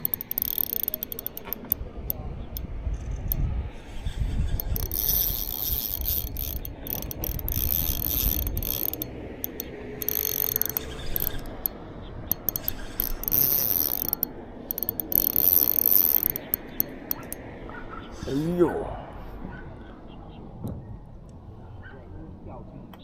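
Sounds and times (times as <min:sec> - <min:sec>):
fishing reel ratcheting clicks: 0:00.0 - 0:03.4, 0:04.5 - 0:17.4.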